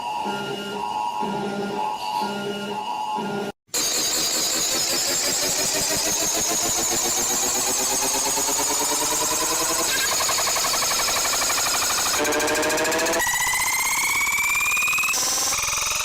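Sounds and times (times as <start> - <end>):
pulsing synthesized alarm tone: 0.0 - 16.0.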